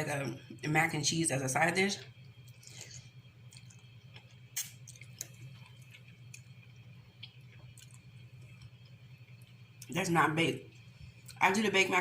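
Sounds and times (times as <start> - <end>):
low steady hum: 0.0 - 12.0
chewing with mouth clicks: 2.4 - 9.9.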